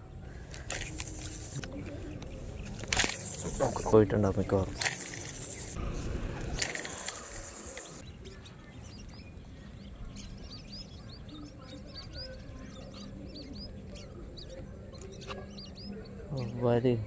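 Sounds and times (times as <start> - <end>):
small birds chirping: 0.0 - 17.0
rushing hiss: 0.7 - 1.6, 3.0 - 4.0, 4.9 - 5.8, 6.6 - 8.0.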